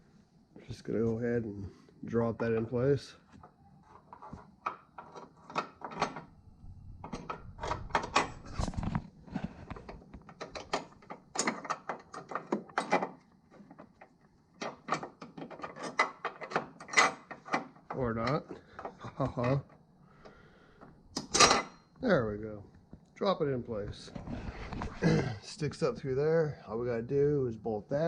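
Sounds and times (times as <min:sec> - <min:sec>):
metal clanks and knocks: 0:07.0 - 0:09.0, 0:09.7 - 0:19.6, 0:21.2 - 0:21.8.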